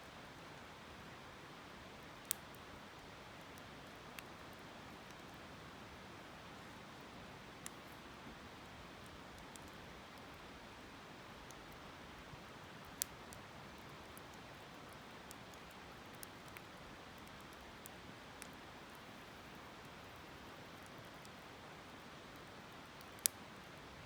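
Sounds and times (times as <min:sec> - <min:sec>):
campfire crackling and popping: 0:02.2 - 0:05.3, 0:11.3 - 0:23.9.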